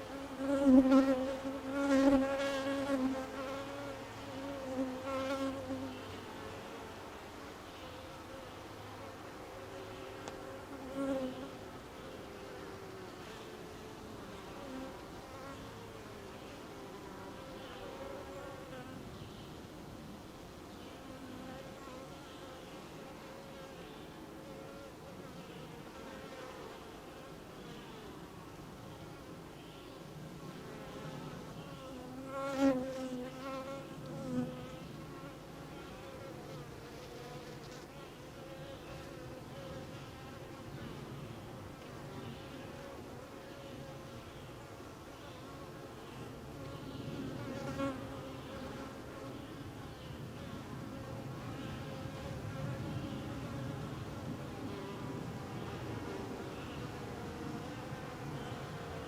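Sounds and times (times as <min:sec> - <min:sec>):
bee buzzing past close: 0:00.0 - 0:19.0, 0:30.4 - 0:49.8, 0:50.4 - 0:59.0
bees buzzing around a hive: 0:00.0 - 0:19.7, 0:20.7 - 0:59.0.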